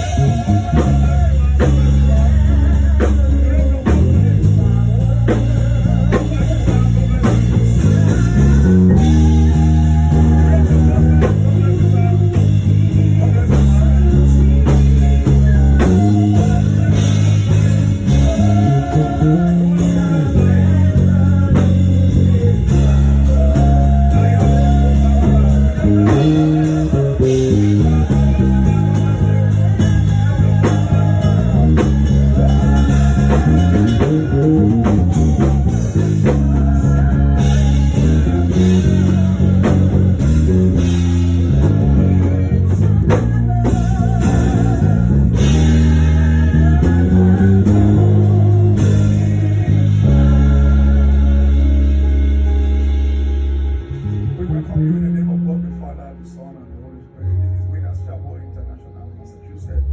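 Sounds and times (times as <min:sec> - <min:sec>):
electric guitar: 0:00.0 - 0:56.5
bass guitar: 0:00.0 - 0:59.9.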